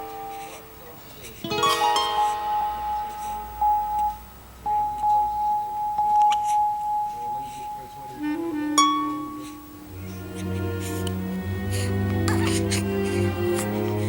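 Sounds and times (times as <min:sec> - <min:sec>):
soft musical accompaniment: 0:00.0 - 0:14.0
plucked note ringing: 0:01.5 - 0:10.2
held high note: 0:06.2 - 0:10.1.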